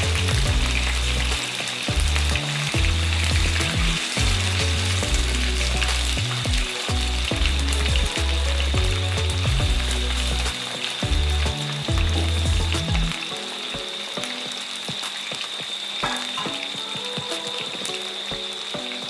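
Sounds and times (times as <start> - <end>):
background music with bass: 0.0 - 13.3
chicken sizzling in hot oil: 0.0 - 19.0.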